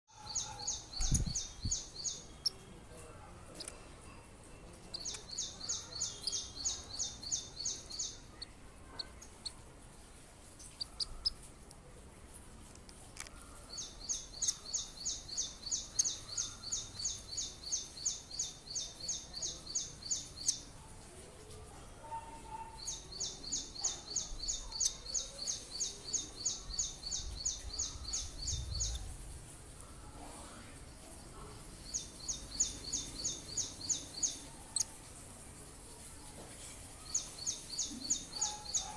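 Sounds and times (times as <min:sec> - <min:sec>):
bird chirping rapidly: 0:00.1 - 0:02.6, 0:04.9 - 0:08.6.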